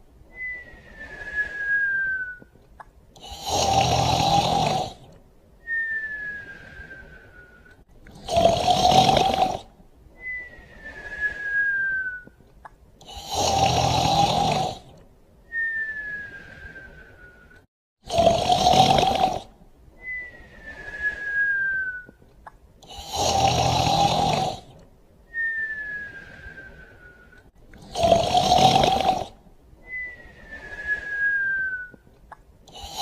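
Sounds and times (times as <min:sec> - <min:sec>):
whistle during sleep breathing: 0:00.3 - 0:02.6, 0:05.6 - 0:07.8, 0:10.2 - 0:12.4, 0:15.5 - 0:17.7, 0:20.0 - 0:22.2, 0:25.3 - 0:27.5, 0:29.8 - 0:32.1
person snoring: 0:03.2 - 0:05.1, 0:08.1 - 0:09.7, 0:13.0 - 0:14.9, 0:18.0 - 0:19.5, 0:22.8 - 0:24.8, 0:27.8 - 0:29.4, 0:32.7 - 0:33.0.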